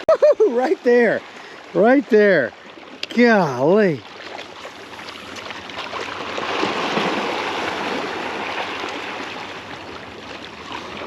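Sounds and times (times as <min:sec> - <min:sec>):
fish splashing in water: 0:04.0 - 0:11.0.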